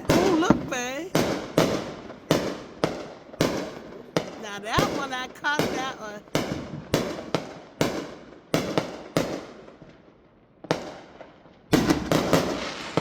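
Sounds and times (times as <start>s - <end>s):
fireworks bangs echoing: 0.0s - 10.0s, 10.6s - 13.0s.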